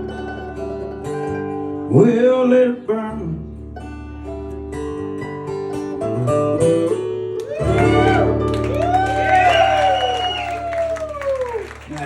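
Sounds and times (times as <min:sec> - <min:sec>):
guitar playing country song: 0:00.0 - 0:12.0.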